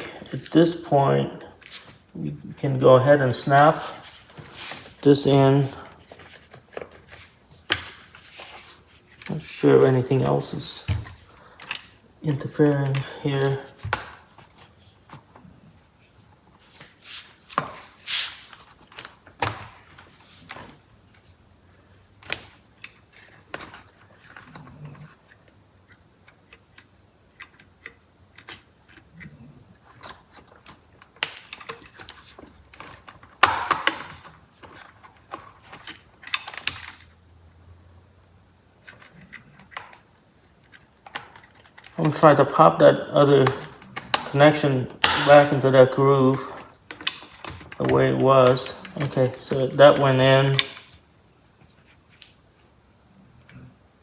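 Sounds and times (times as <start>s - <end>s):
plastic parts clicking and rattling: 10.4s - 15.4s, 22.2s - 37.1s, 38.8s - 45.6s, 46.3s - 51.1s.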